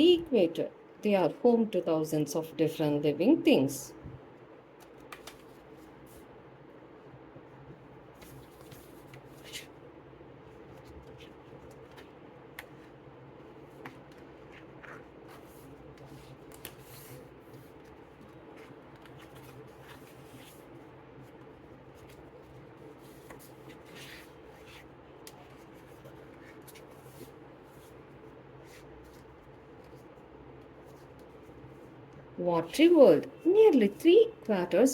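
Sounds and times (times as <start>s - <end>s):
low room hum: 0.0s - 34.9s
paper flaps rustling and clicking: 4.8s - 5.7s.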